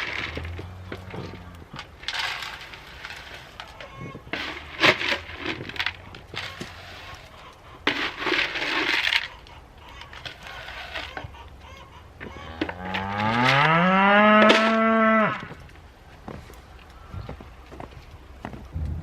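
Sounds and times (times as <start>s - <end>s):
cow mooing: 12.4s - 15.5s.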